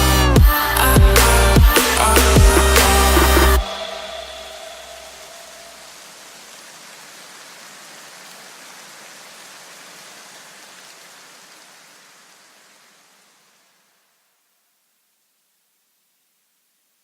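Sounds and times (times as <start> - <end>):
electronic music: 0.0 - 5.9
steady hiss: 0.0 - 17.0.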